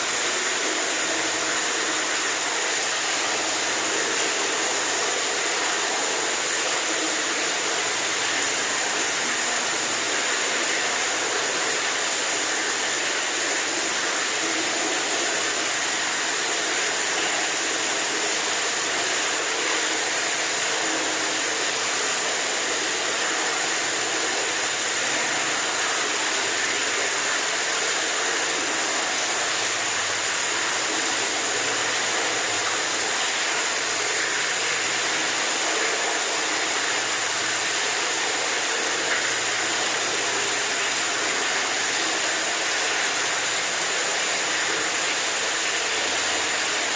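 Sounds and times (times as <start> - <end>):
running water rushing: 0.0 - 46.9.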